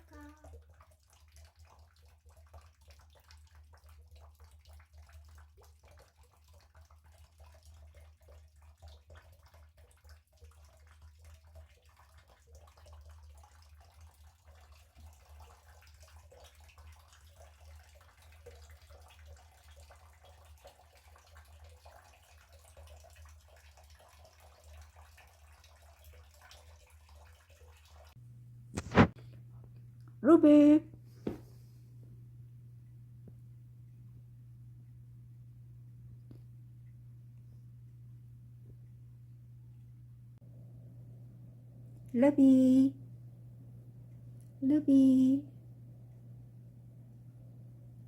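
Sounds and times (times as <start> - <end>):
low hum: 28.2 - 48.0.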